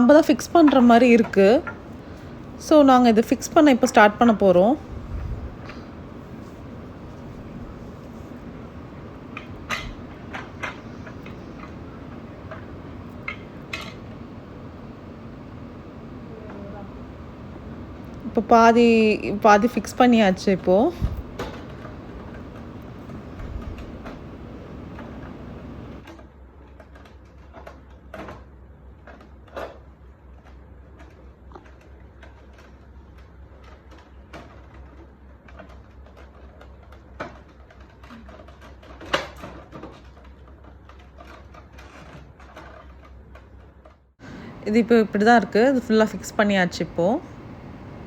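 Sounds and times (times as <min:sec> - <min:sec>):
steady low hum: 0:00.0 - 0:26.1, 0:44.2 - 0:48.0.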